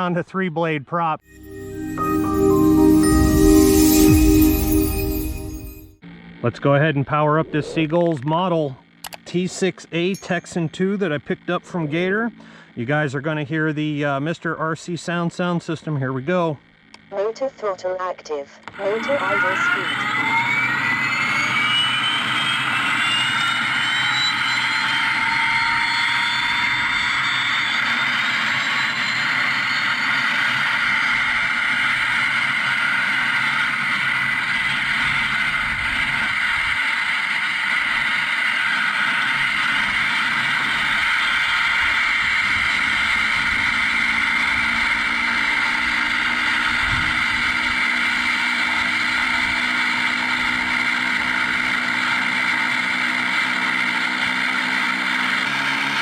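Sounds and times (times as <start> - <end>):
turbine engine whine: 18.6 - 56.0.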